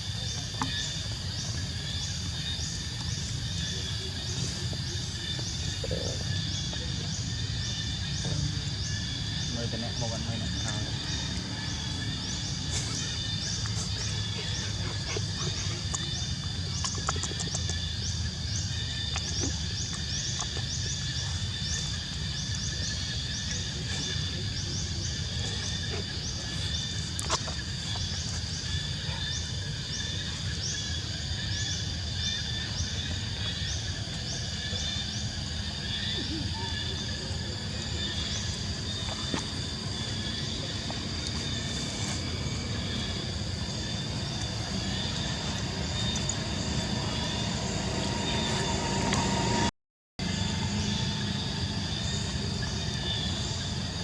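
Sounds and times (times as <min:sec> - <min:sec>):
steady high drone: 0:36.2 - 0:54.0.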